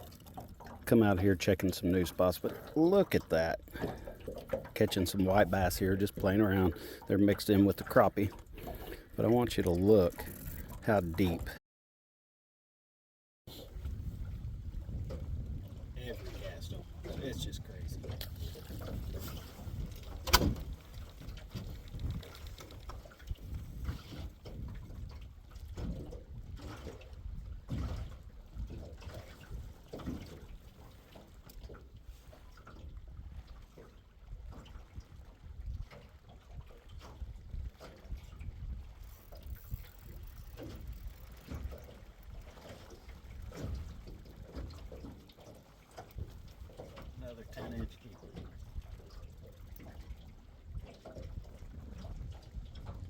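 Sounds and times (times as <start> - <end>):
water lapping and splashing: 0.0 - 11.6, 13.5 - 53.0
wind rumble on microphone: 13.5 - 45.3, 46.1 - 53.0.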